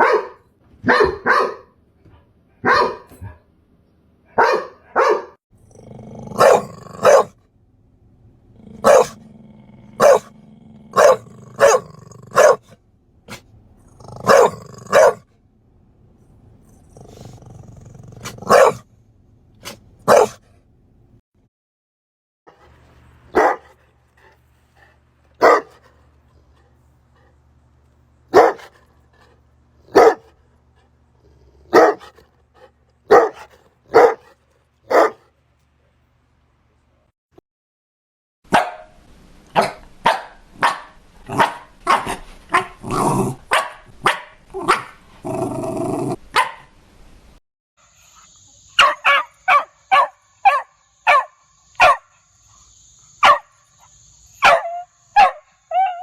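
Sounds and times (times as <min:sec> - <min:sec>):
dogs barking: 0:00.0 - 0:01.8, 0:02.6 - 0:03.4, 0:04.3 - 0:05.4, 0:06.3 - 0:07.4, 0:08.7 - 0:09.2, 0:09.9 - 0:13.4, 0:14.0 - 0:15.2, 0:18.2 - 0:18.9, 0:19.6 - 0:20.4, 0:23.3 - 0:24.4, 0:25.4 - 0:26.0, 0:28.3 - 0:28.8, 0:29.8 - 0:30.4, 0:31.6 - 0:35.3, 0:38.5 - 0:38.9, 0:39.6 - 0:42.8, 0:43.5 - 0:45.0, 0:46.3 - 0:46.7, 0:48.8 - 0:52.1, 0:53.2 - 0:53.6, 0:54.4 - 0:56.0.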